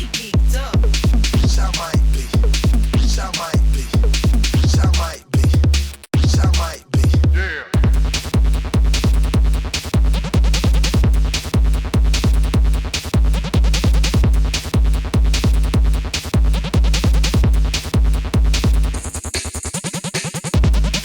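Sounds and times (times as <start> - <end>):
electronic music with heavy bass: 0.0 - 21.0.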